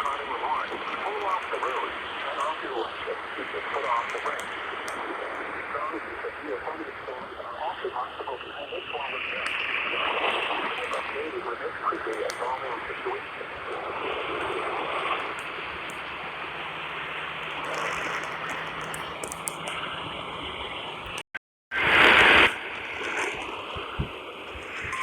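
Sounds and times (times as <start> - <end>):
radio static hiss: 0.0 - 25.0.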